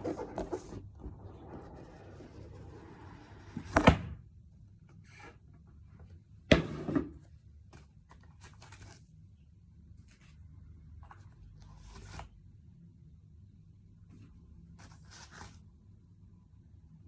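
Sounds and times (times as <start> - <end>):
scraping and rustling: 0.0 - 3.8.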